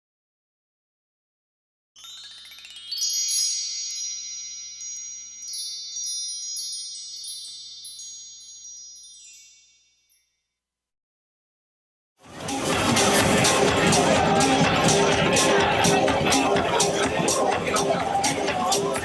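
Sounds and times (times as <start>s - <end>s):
shimmering bell-like chimes: 2.0s - 10.6s.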